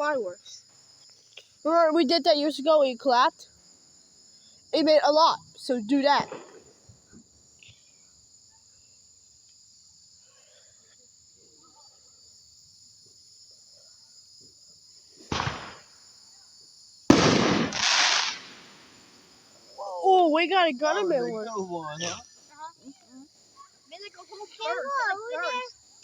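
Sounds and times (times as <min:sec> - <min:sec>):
insects chirring: 0:00.0 - 0:26.0
distant fireworks bangs: 0:15.2 - 0:16.0, 0:17.1 - 0:19.2.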